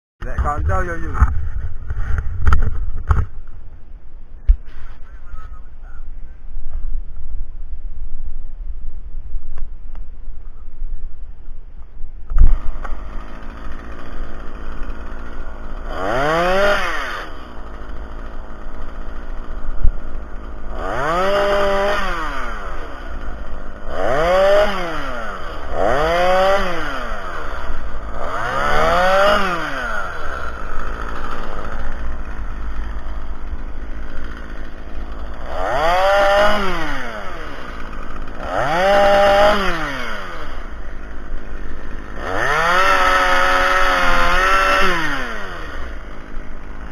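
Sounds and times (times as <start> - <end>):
chainsaw revving: 12.4 - 46.9.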